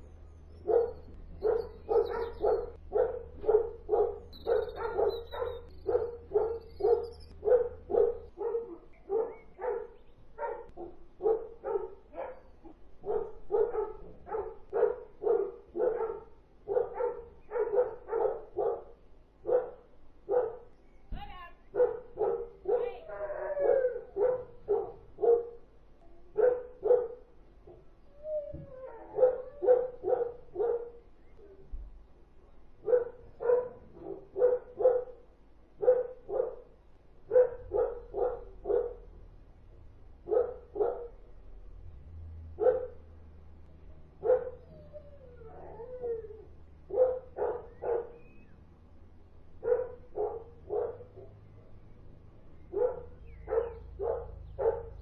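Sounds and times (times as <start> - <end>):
faint low hum: 0.0 - 55.0
dogs barking: 0.4 - 20.8, 21.7 - 31.6, 32.8 - 39.2, 40.2 - 43.3, 43.9 - 55.0
dog whining: 3.4 - 7.4, 28.0 - 30.3, 44.2 - 48.7.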